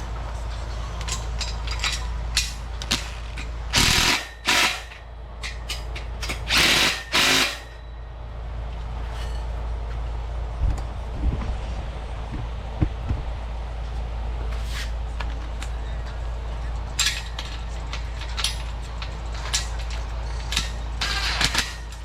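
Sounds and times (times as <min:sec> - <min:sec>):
ratchet clicks: 0:01.0 - 0:07.8
power driver bursts: 0:03.7 - 0:05.0, 0:06.4 - 0:07.8.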